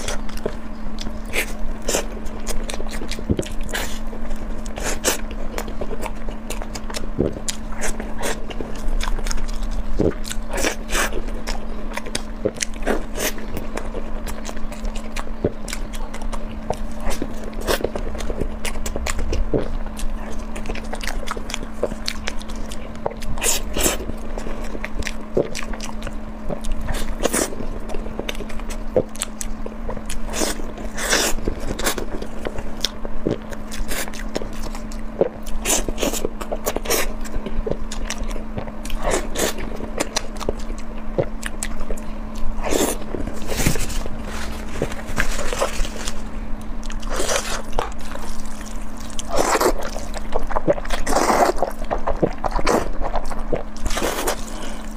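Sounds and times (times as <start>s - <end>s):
crunchy eating and chewing: 0.0s - 54.9s
faint steady hum: 0.0s - 54.9s
crisp crackles: 42.0s - 54.9s.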